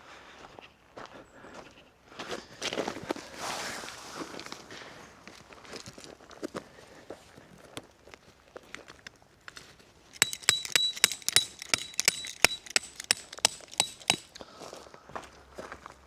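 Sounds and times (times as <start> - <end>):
hard objects clinking together: 10.2 - 14.4.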